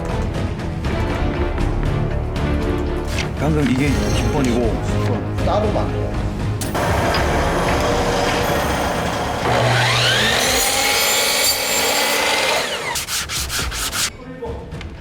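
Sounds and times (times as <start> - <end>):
motor whine: 6.6 - 13.1
power sander sanding wood: 6.8 - 14.1
short rasping strokes: 10.7 - 14.1.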